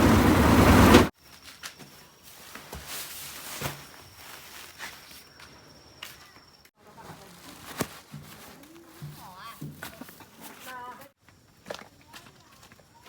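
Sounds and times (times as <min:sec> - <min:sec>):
steady high insect tone: 0:03.8 - 0:06.8.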